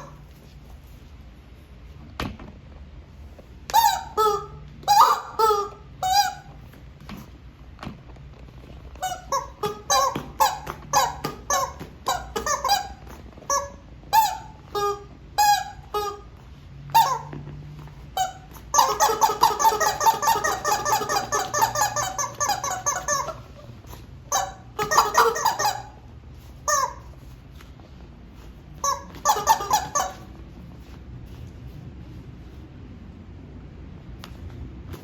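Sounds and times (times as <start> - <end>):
rubber squeaky toys squeaking: 0.0 - 0.3, 3.6 - 7.4, 8.6 - 30.9
rubber toy honks: 3.7 - 6.6, 9.0 - 17.3, 18.1 - 23.7, 24.3 - 27.3, 28.8 - 30.4.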